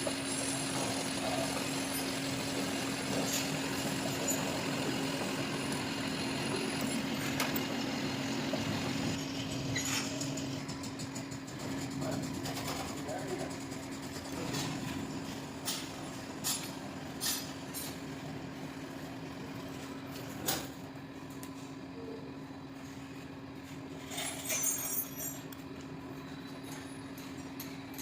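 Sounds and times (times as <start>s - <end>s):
workshop machine humming: 0.0s - 28.0s.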